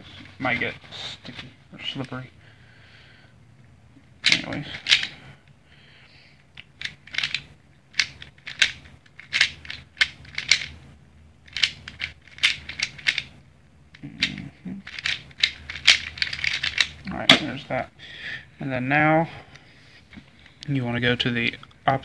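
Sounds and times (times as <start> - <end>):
speed cube layers clacking: 6.6 - 10.8, 11.4 - 13.3, 13.9 - 17.1.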